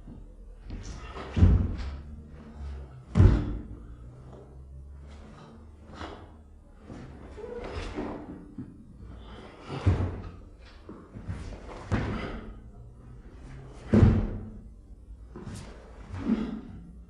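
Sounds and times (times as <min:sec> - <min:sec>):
feet thudding on floor: 0:00.7 - 0:02.1, 0:03.1 - 0:03.7, 0:09.6 - 0:12.6, 0:13.8 - 0:14.6.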